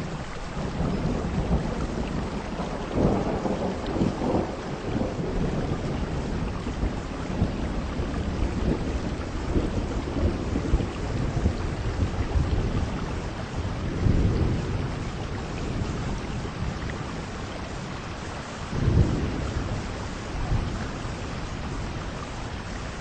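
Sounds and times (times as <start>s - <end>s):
heavy rain pouring: 0.0s - 23.0s.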